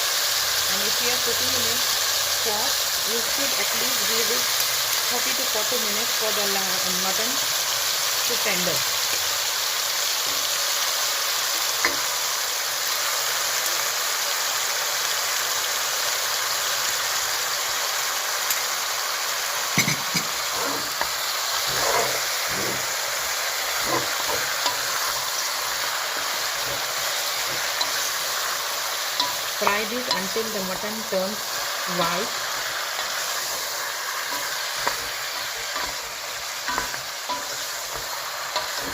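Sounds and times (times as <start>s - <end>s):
meat sizzling in oil: 0.0s - 38.9s
utensil knocking and scraping pot: 19.8s - 22.9s, 29.1s - 38.9s.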